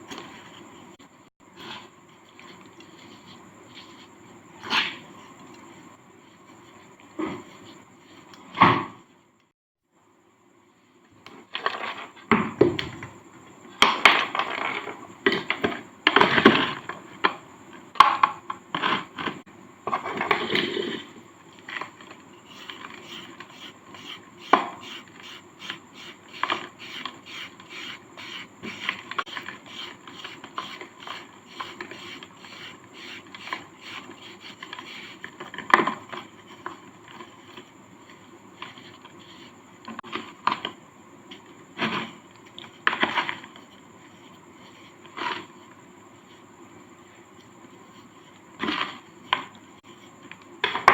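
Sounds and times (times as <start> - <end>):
short scraping strokes: 22.4 - 35.3.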